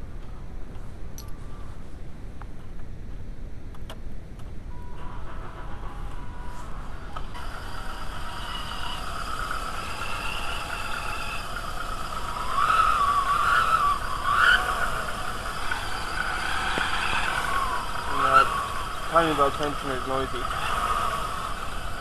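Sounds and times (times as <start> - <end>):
belt tensioner whine: 4.7 - 22.0
car engine running: 5.1 - 22.0.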